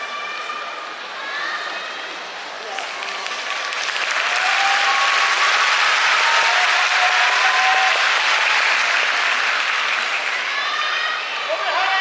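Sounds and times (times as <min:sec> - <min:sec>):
crowd applauding and cheering: 0:02.7 - 0:10.8.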